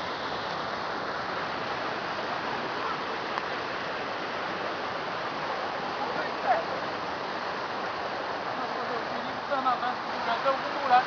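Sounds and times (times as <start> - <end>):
flowing water rushing: 0.0 - 11.0.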